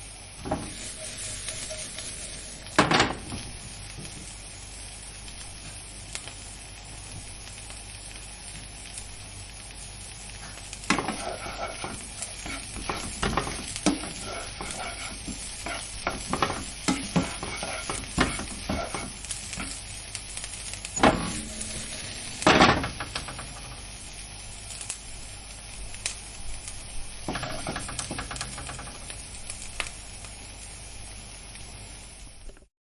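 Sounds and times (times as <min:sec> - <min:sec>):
vegetables sizzling in a frying pan: 0:00.0 - 0:32.7
utensil scraping a pan: 0:10.9 - 0:19.8, 0:21.0 - 0:23.7, 0:27.3 - 0:28.9.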